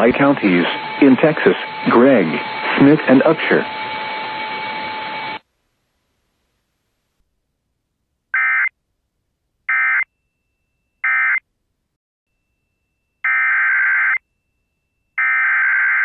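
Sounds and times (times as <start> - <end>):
shrill warbling data bursts: 0.0 - 5.4.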